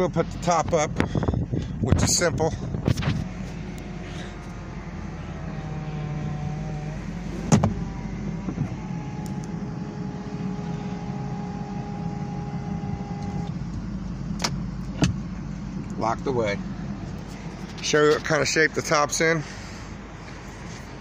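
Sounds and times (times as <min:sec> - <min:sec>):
electric motor whine: 0:03.0 - 0:13.8.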